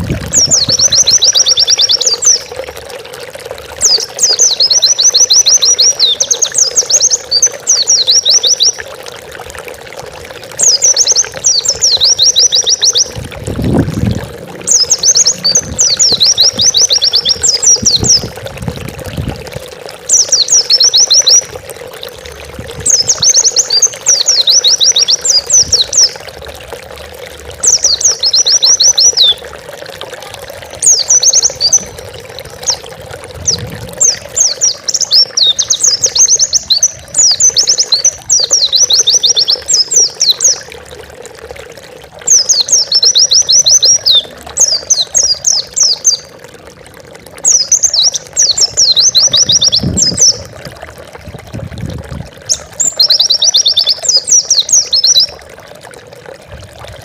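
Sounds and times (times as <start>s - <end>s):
bird singing high trills: 0.3s - 2.5s, 3.8s - 8.8s, 10.6s - 13.2s, 14.6s - 18.3s, 20.1s - 21.5s, 22.9s - 26.2s, 33.5s - 40.6s, 42.3s - 46.3s, 47.4s - 50.4s, 52.5s - 55.4s.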